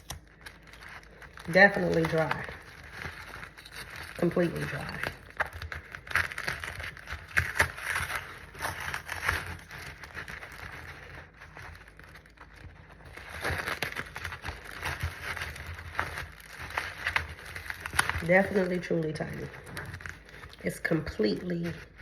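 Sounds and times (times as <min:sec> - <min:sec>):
dry soil crackling and rustling: 0:00.0 - 0:22.0.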